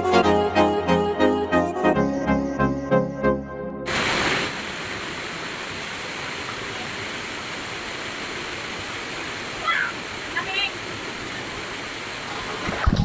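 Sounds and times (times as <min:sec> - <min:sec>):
waterfall rushing: 0:03.9 - 0:13.0.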